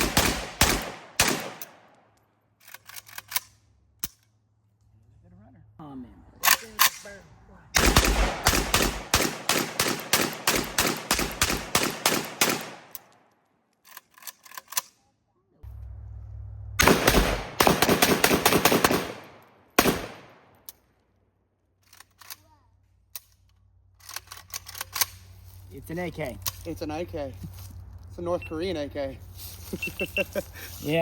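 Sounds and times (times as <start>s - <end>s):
rifle shots: 0.0s - 1.9s, 7.8s - 12.9s, 16.8s - 20.6s.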